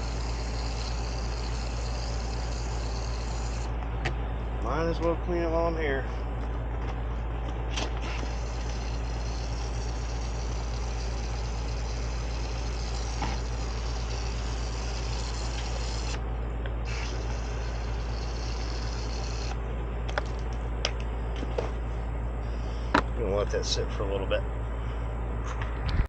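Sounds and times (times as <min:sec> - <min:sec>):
spray can hissing: 0:00.0 - 0:03.7, 0:08.1 - 0:16.2, 0:16.9 - 0:19.6
steady low hum: 0:00.0 - 0:26.0.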